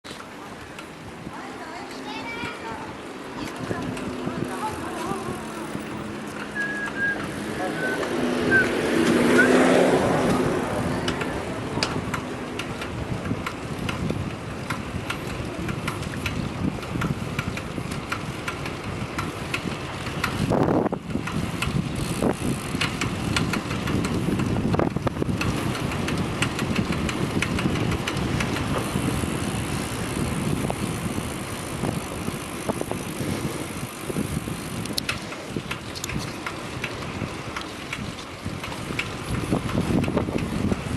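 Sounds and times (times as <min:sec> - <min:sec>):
irregular ticking: 0:10.3 - 0:32.9.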